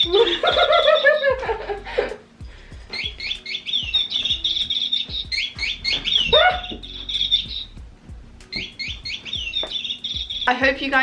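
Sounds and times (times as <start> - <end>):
electronic bird chirps: 0.0 - 1.4, 2.9 - 7.8, 8.5 - 10.6.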